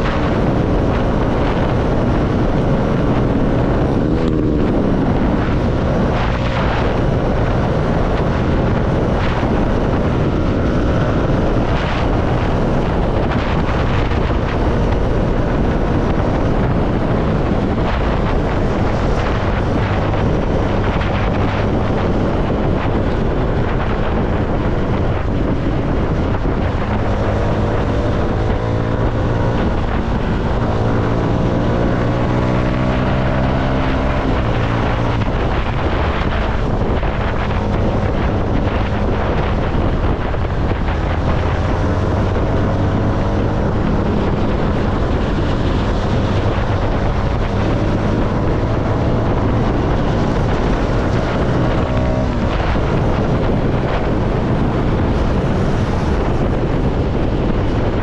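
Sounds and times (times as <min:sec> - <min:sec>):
motorcycle engine accelerating: 0:00.0 - 0:58.0
wind buffeting microphone: 0:00.0 - 0:58.0.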